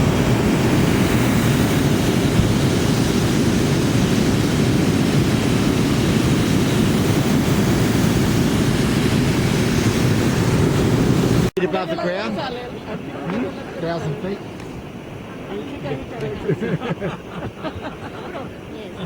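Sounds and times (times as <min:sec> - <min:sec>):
propane burner blast: 0:00.0 - 0:11.5.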